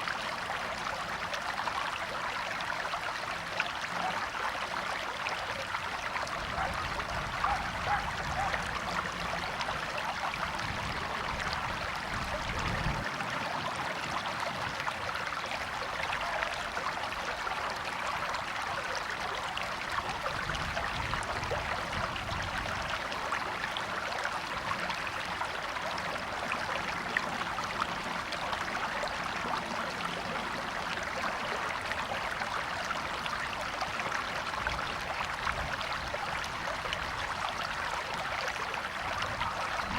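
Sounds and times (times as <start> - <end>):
river flowing: 0.0 - 39.9.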